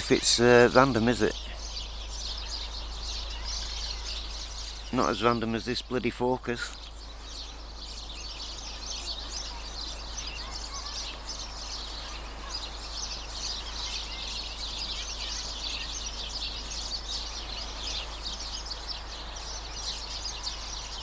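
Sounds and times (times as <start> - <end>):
low background rumble: 0.0 - 21.0
small birds chirping: 0.0 - 21.0.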